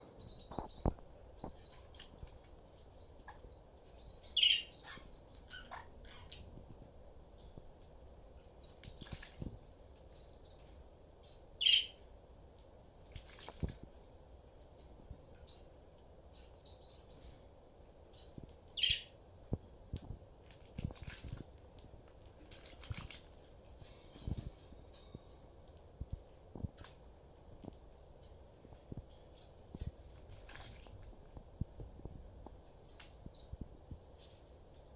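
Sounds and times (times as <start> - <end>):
parrot chirping: 3.1 - 6.4, 11.6 - 12.0, 18.8 - 19.1
parrot wings flapping and splashing: 8.6 - 9.6, 13.0 - 14.0, 20.4 - 24.6, 29.4 - 31.3.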